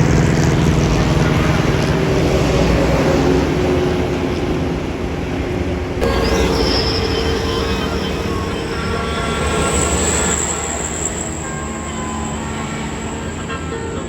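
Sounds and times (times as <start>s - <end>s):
bus engines deep rumble: 0.0s - 14.0s
high thin squeal: 6.0s - 14.0s
steady mid-pitched tone: 6.0s - 14.0s.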